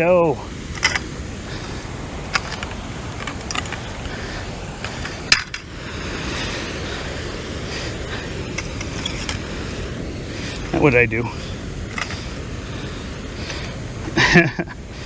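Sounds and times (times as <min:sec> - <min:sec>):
steady background hiss: 0:00.0 - 0:15.0
hard objects clicking and clinking: 0:00.7 - 0:01.1, 0:02.2 - 0:04.1, 0:04.8 - 0:05.7, 0:11.9 - 0:12.2.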